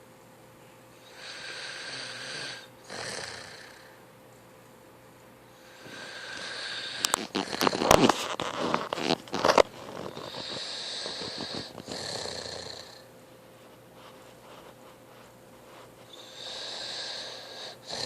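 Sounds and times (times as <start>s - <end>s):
person snoring: 1.1s - 4.0s, 5.6s - 8.0s, 9.9s - 13.0s, 16.1s - 18.0s.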